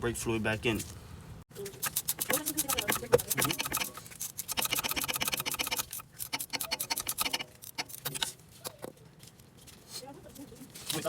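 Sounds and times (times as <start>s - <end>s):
ratchet wrench clicking: 1.8s - 8.9s.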